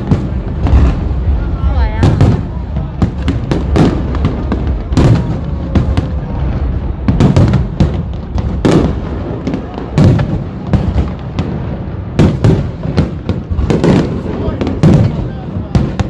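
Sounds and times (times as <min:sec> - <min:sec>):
fireworks bangs and crackles: 0:00.0 - 0:16.0.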